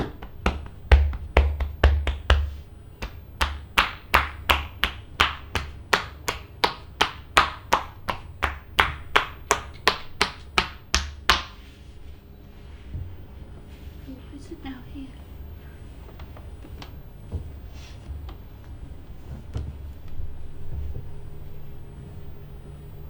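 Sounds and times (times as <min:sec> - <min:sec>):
hands slapping a back: 0:00.0 - 0:11.7.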